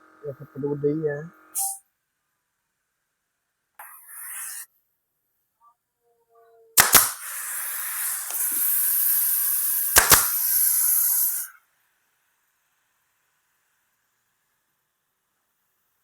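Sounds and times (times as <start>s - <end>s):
sharp double click: 6.8s - 7.3s, 9.9s - 10.7s.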